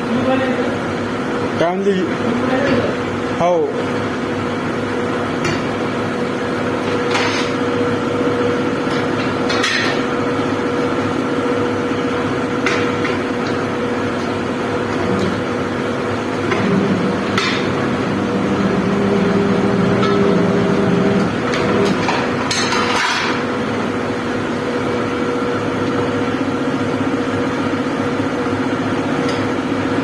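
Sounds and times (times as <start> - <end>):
machine hum: 0.0 - 30.0.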